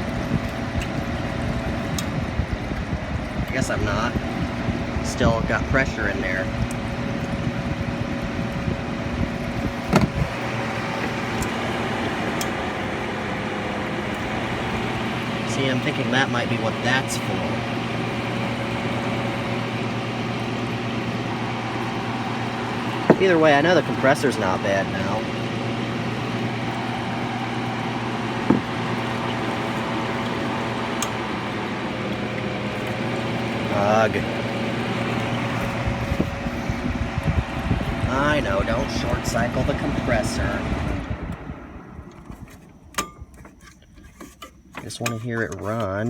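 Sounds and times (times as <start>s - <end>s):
window air conditioner running: 0.0s - 46.0s
short knock: 28.5s - 28.7s.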